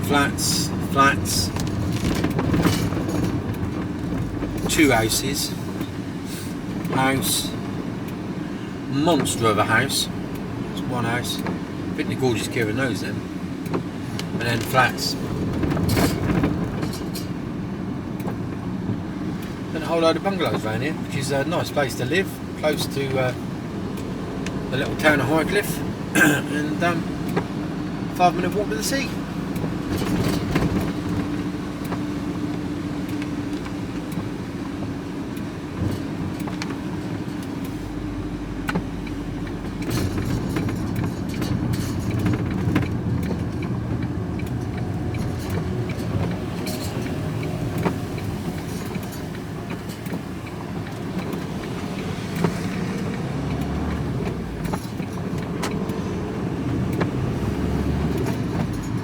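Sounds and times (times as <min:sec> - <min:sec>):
engine and road rumble: 0:00.0 - 0:59.0
small rattles and clinks: 0:01.5 - 0:04.7.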